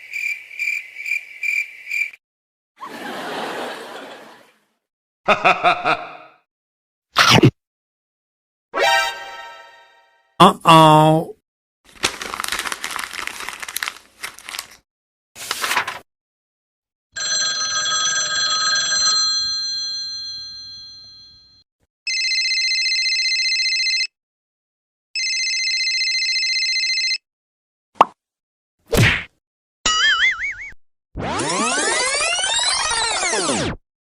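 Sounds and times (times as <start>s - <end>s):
long ringing tone: 17.2s - 24.0s
old telephone bell ringing: 17.2s - 24.1s, 25.2s - 27.2s.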